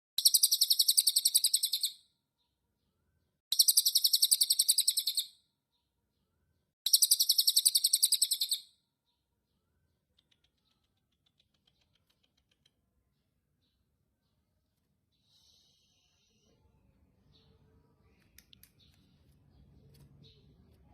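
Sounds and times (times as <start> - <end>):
songbird trilling: 0.2 - 2.0, 3.5 - 5.3, 6.9 - 8.6.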